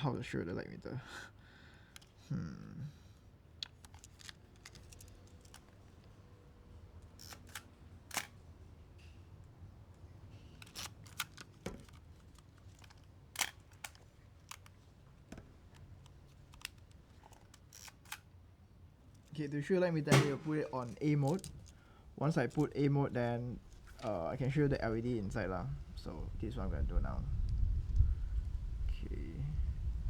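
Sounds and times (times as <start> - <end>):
camera dials clicking: 3.6 - 6.2, 7.0 - 8.4, 10.6 - 14.8, 15.7 - 18.4.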